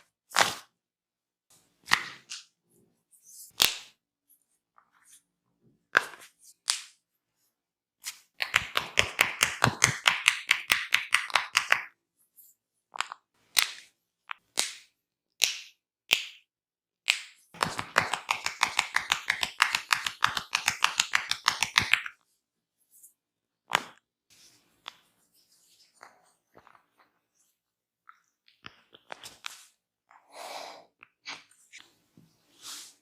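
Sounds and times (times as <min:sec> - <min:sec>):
hands slapping skin: 0:08.0 - 0:12.0, 0:12.9 - 0:22.2.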